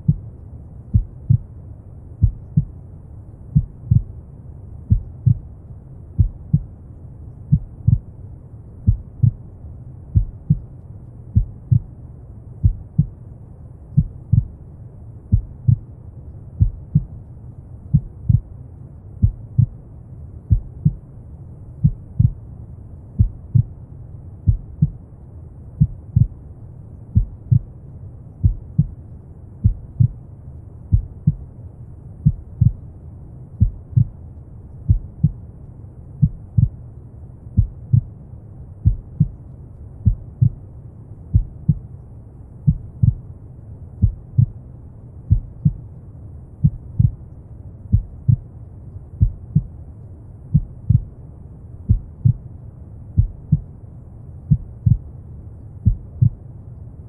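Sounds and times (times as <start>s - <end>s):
slow heartbeat thumps: 0.0s - 0.3s, 0.9s - 1.5s, 2.2s - 2.8s, 3.5s - 4.2s, 4.8s - 5.5s, 6.2s - 6.7s, 7.5s - 8.1s, 8.8s - 9.5s, 10.1s - 10.7s, 11.3s - 11.9s, 12.6s - 13.2s, 13.9s - 14.6s, 15.3s - 15.8s, 16.6s - 17.2s, 17.9s - 18.5s, 19.2s - 19.8s, 20.5s - 21.0s, 21.8s - 22.4s, 23.2s - 23.8s, 24.4s - 25.0s, 25.8s - 26.4s, 27.2s - 27.7s, 28.4s - 29.0s, 29.6s - 30.2s, 30.9s - 31.5s, 32.2s - 32.8s, 33.6s - 34.2s, 34.9s - 35.4s, 36.2s - 36.8s, 37.6s - 38.1s, 38.8s - 39.4s, 40.0s - 40.6s, 41.3s - 41.8s, 42.6s - 43.3s, 44.0s - 44.6s, 45.3s - 45.9s, 46.6s - 47.2s, 47.9s - 48.5s, 49.2s - 49.8s, 50.5s - 51.1s, 51.9s - 52.5s, 53.2s - 53.7s, 54.5s - 55.1s, 55.8s - 56.4s.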